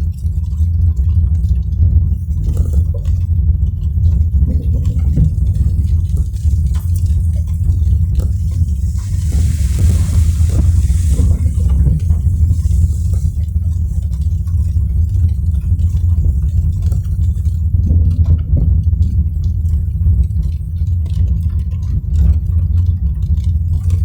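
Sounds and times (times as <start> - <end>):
rain ticking on car: 0.0 - 24.0
car driving rumble: 2.0 - 16.3
faint hiss: 5.3 - 14.0.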